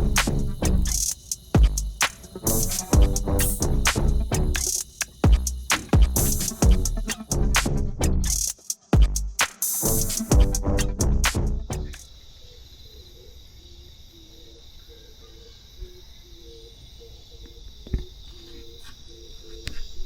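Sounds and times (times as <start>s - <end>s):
low rumble: 0.0s - 1.0s, 2.7s - 8.4s
insects shrilling: 0.0s - 20.0s.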